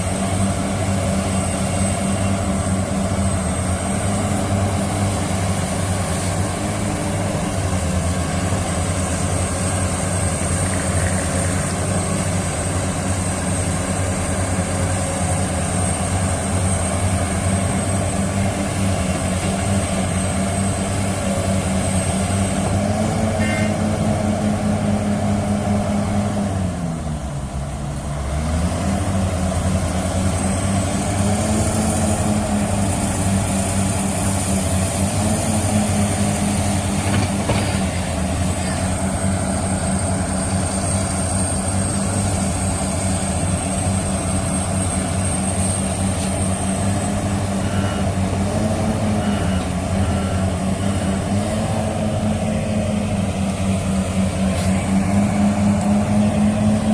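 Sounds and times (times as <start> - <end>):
heavy diesel engines running: 0.0 - 56.9.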